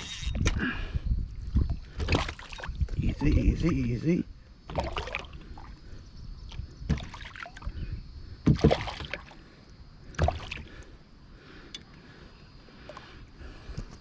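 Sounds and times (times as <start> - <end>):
water splashes: 1.9 - 4.1, 4.7 - 5.8, 6.5 - 7.8, 8.5 - 9.4, 10.1 - 10.8
knocks in a kayak: 8.4 - 9.2.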